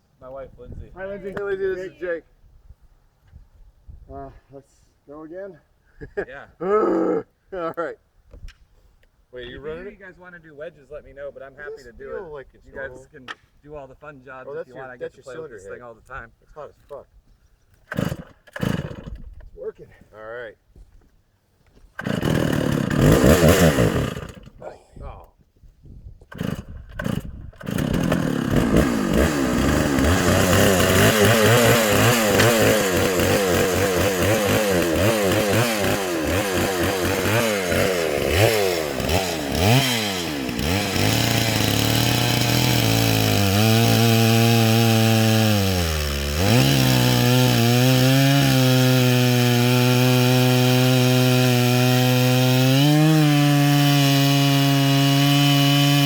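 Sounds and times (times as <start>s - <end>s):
chainsaw ripping through log: 17.8s - 19.3s, 21.9s - 24.6s, 26.2s - 56.0s.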